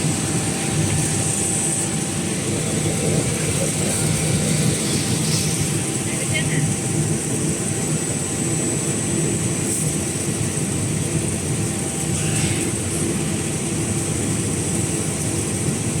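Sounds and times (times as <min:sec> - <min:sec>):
machinery droning: 0:00.0 - 0:15.3.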